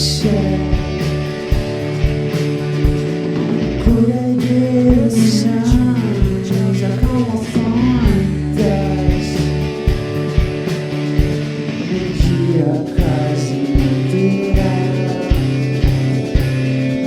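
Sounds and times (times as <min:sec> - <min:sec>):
person singing: 0:00.0 - 0:01.5, 0:03.7 - 0:09.9, 0:11.9 - 0:17.0
rock band playing live: 0:00.0 - 0:17.0.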